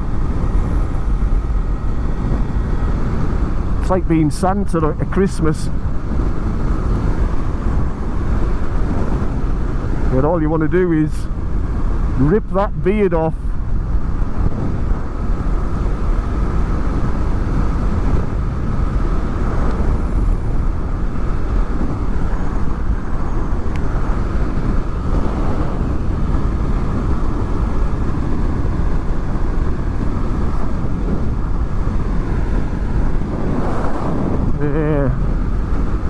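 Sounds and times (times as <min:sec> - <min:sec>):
wind rush and road noise: 0:00.0 - 0:36.0.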